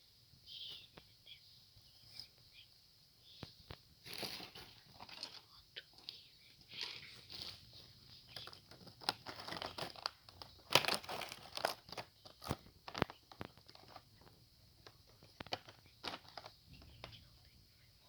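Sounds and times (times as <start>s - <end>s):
packaging crinkling and tearing: 8.3s - 14.0s, 14.8s - 16.6s.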